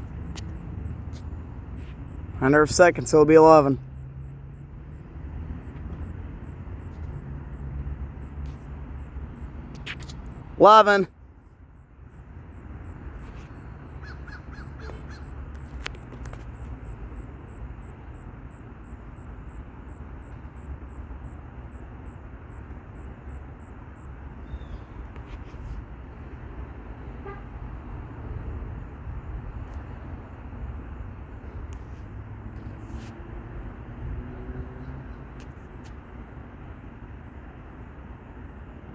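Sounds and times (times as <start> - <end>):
short calls: 9.8 - 11.1.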